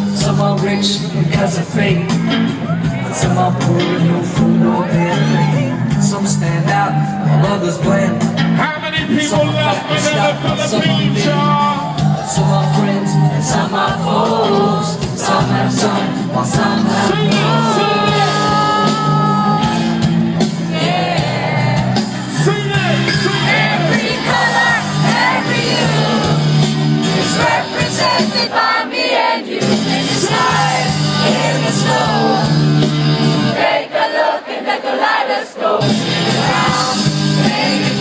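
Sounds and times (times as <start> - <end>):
steady bassline: 0.0 - 28.5, 29.6 - 33.6, 35.8 - 38.0
crowd shouting: 9.2 - 38.0.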